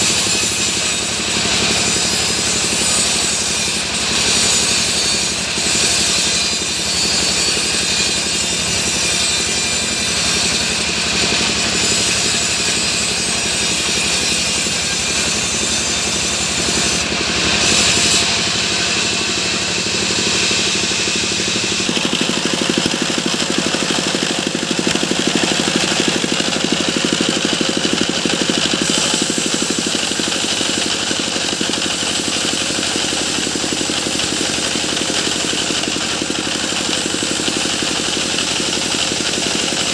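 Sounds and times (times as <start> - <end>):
sawmill machine running: 0.0 - 39.9
engine beat: 14.6 - 32.2.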